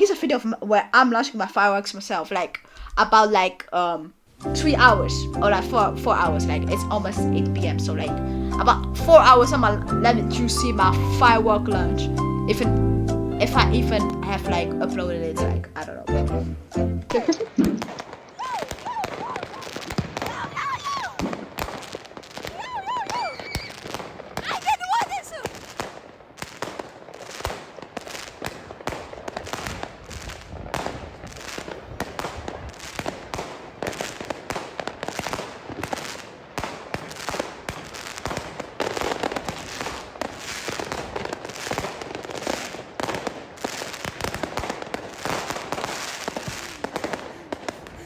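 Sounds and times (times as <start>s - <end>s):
fireworks bangs and crackles: 17.2s - 48.0s.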